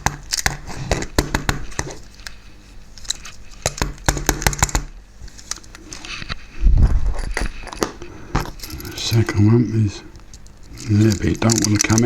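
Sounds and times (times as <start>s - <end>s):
small tools clicking and scraping: 10.3s - 12.0s.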